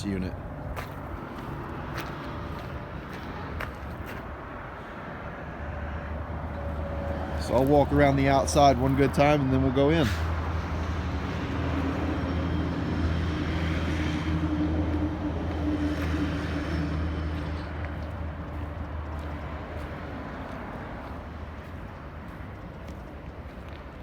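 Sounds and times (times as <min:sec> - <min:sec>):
engine running: 0:05.6 - 0:24.0.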